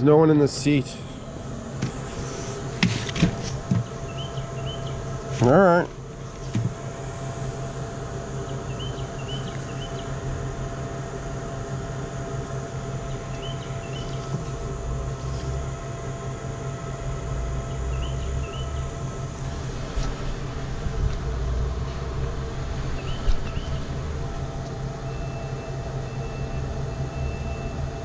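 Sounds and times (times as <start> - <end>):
machine hum with held tones: 0.0 - 28.0
pulsing low rumble: 0.0 - 28.0
small bird chirping: 3.8 - 5.1, 8.4 - 10.1, 13.1 - 14.3.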